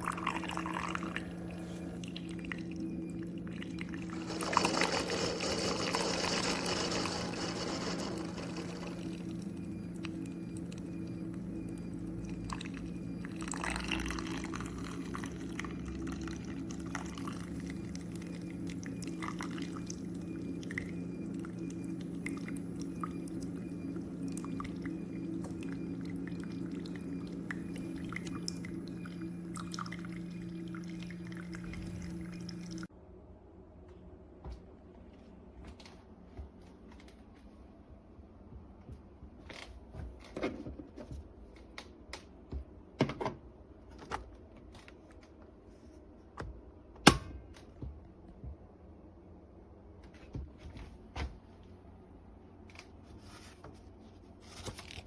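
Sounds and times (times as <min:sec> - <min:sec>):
coffee dripping into cup: 0:00.0 - 0:05.6, 0:07.7 - 0:32.9
coffee maker pump humming: 0:00.0 - 0:32.9.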